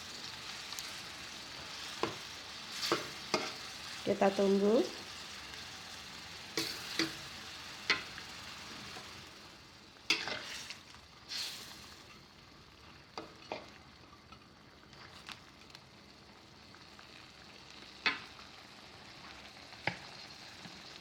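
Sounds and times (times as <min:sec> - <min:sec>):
shrimp sizzling in a pan: 0:00.0 - 0:21.0
spatula scraping a pan: 0:01.7 - 0:03.7, 0:10.1 - 0:11.6.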